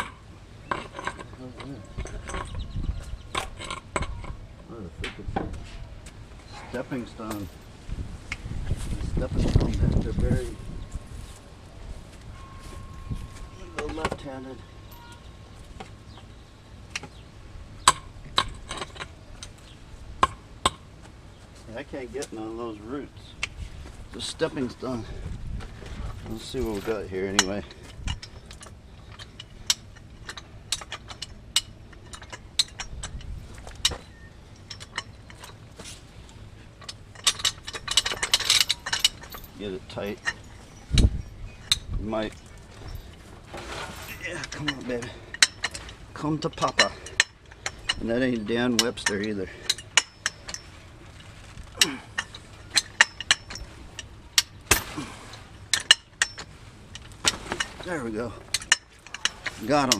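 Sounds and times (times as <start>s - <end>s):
tree creaking: 23.7s - 59.9s
metal chain clinking: 26.2s - 36.0s, 36.7s - 59.9s
chain jangling: 36.8s - 55.0s.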